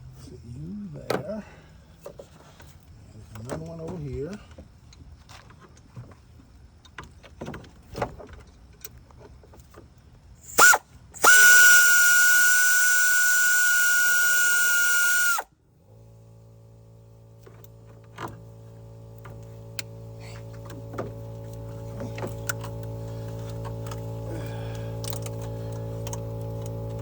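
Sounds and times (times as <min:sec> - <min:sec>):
air ratchet whine: 0:10.4 - 0:15.5, 0:17.4 - 0:27.0
steady low hum: 0:10.4 - 0:27.0.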